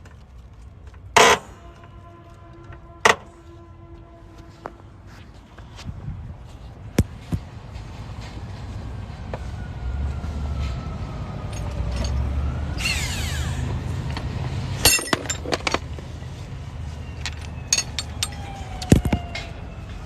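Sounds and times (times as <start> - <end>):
road traffic rumble: 0.0 - 20.0
hand tools clinking on metal: 14.8 - 15.8, 17.2 - 19.5.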